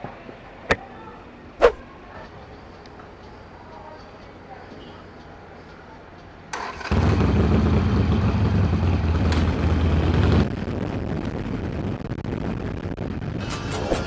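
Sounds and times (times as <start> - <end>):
motorcycle engine starting and idling: 6.5 - 10.5.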